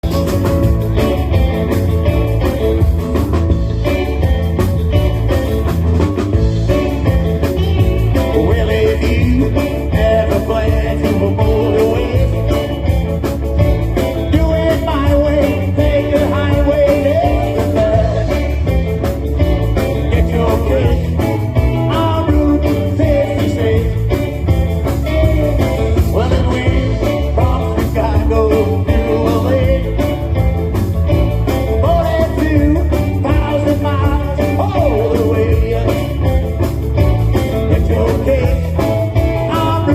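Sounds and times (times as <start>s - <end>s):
rock and roll band playing: 0.0s - 39.9s
wavering lead guitar line: 0.0s - 39.9s.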